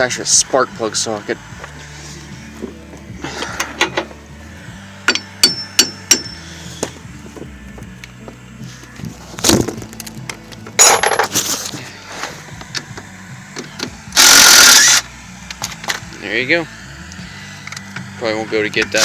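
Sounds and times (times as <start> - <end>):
metal clatter: 10.8 - 11.8
metal tools clinking: 10.8 - 11.8.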